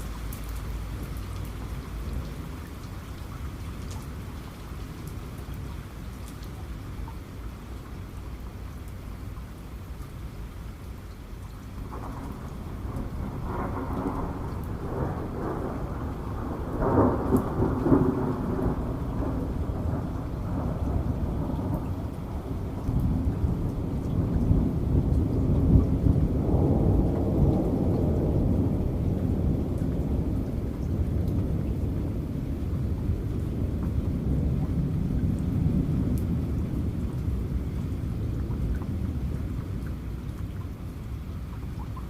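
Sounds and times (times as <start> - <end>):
heavy rain: 0.0 - 42.0
thunder rumbling: 11.8 - 39.8.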